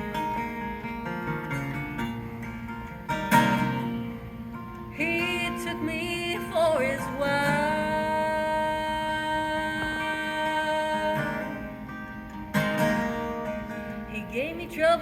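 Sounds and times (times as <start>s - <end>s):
acoustic guitar strumming: 0.0s - 15.0s
woman singing: 4.9s - 12.0s, 14.0s - 15.0s.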